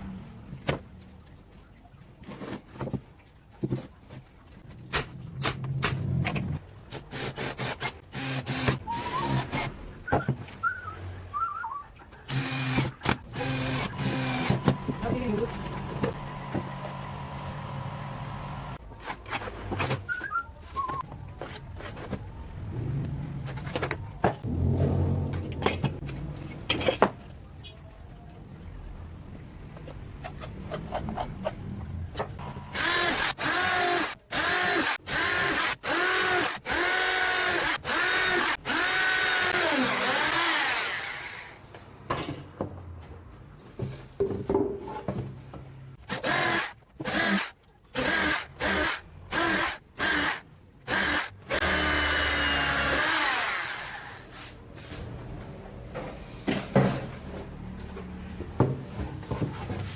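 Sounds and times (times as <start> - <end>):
electric drill whirring: 7.2 - 9.7, 12.3 - 15.0, 32.7 - 41.6, 46.1 - 54.2.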